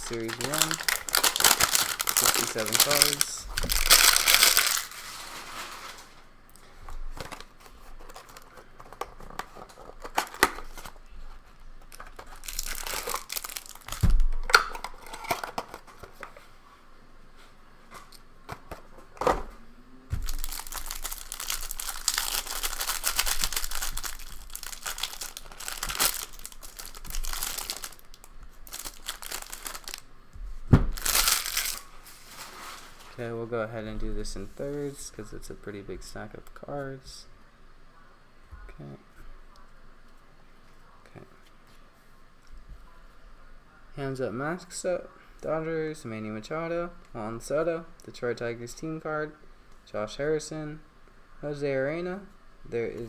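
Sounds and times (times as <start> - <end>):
cardboard tearing: 0.0 - 6.1, 20.2 - 28.1, 28.7 - 30.0, 30.9 - 33.0
plastic wrapper crinkling: 0.0 - 16.3, 20.1 - 30.1, 30.8 - 33.2.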